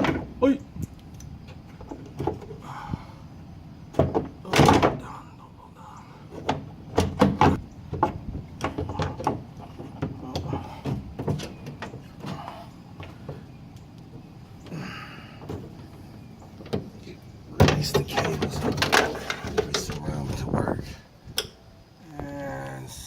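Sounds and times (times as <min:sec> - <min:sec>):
metal rattle: 0:15.4 - 0:20.5.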